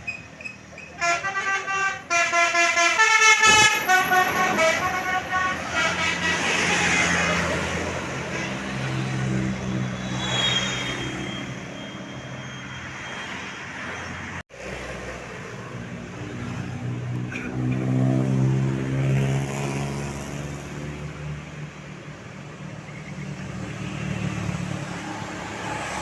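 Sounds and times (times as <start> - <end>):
bus engine revving: 1.0 - 10.2.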